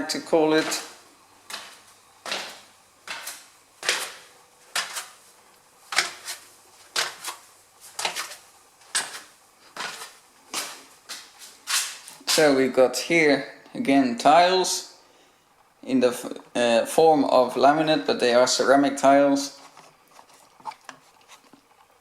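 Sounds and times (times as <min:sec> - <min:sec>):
footsteps on tile floor: 0:00.0 - 0:12.5.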